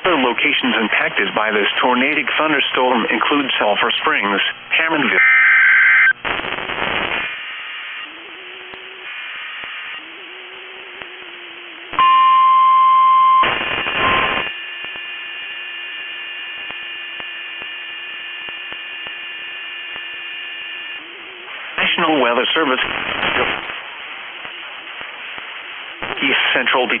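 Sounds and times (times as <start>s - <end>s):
burst of static: 0.0s - 12.0s, 13.2s - 27.0s
radio hiss: 0.0s - 12.0s, 13.3s - 27.0s
faint buzzing hum: 0.1s - 21.8s
loud steady alert tone: 12.0s - 21.4s.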